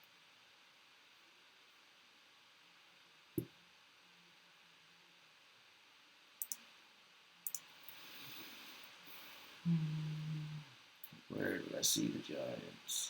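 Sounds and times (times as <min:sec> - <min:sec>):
faint room noise: 0:00.0 - 0:13.0
sharp clicks: 0:06.4 - 0:06.6, 0:07.4 - 0:07.6.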